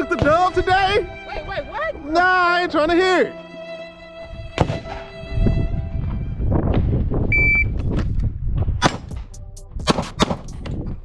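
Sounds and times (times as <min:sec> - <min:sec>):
background music: 0:00.0 - 0:07.3, 0:09.1 - 0:10.8
wind buffeting microphone: 0:04.2 - 0:09.1
shot timer beep: 0:07.4 - 0:07.7.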